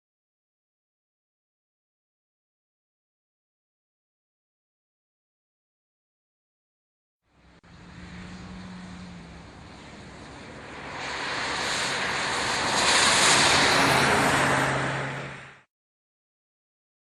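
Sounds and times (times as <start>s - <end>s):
car driving past: 7.3s - 15.7s.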